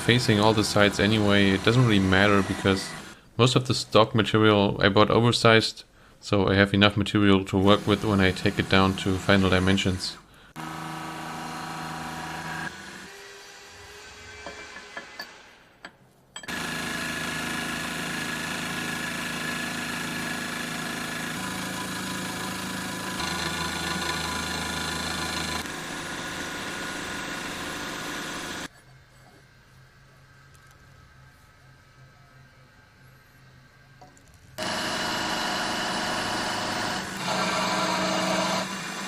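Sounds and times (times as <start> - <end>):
milling machine cutting steel: 0.0 - 3.2, 16.4 - 28.7, 34.6 - 39.0.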